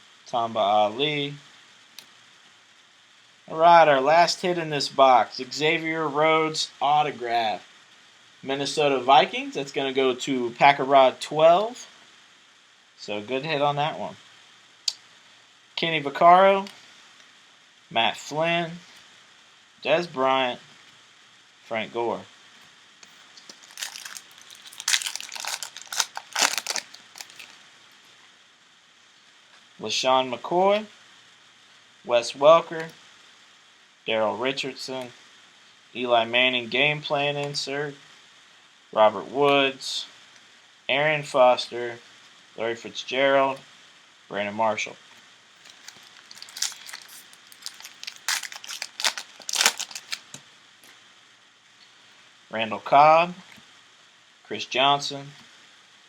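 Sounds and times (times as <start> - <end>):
foil wrapper tearing and crinkling: 23.4 - 27.5, 45.6 - 50.4.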